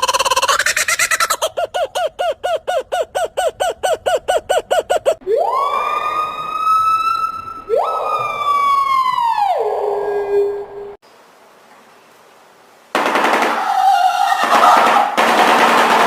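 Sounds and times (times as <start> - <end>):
bird chirping rapidly: 0.0 - 5.2
bird siren-like wails: 1.8 - 11.0, 13.6 - 15.1.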